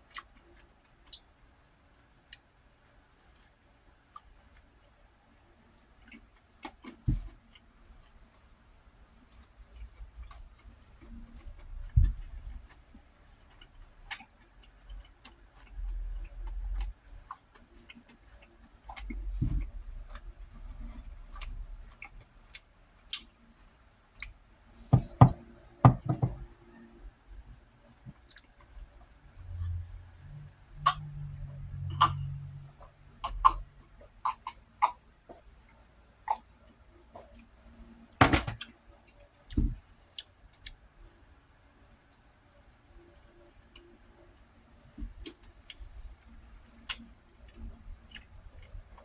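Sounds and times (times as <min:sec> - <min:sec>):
chewing: 0:09.3 - 0:24.4, 0:28.1 - 0:28.8.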